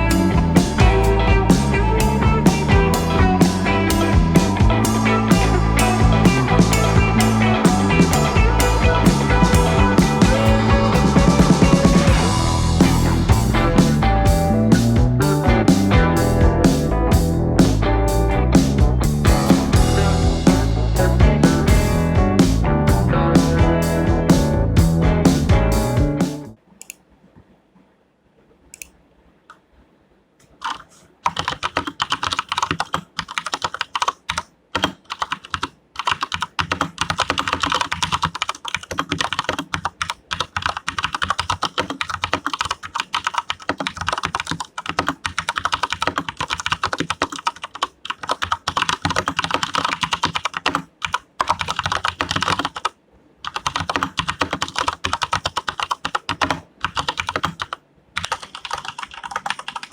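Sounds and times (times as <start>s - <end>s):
mechanical keyboard typing: 30.6s - 59.9s.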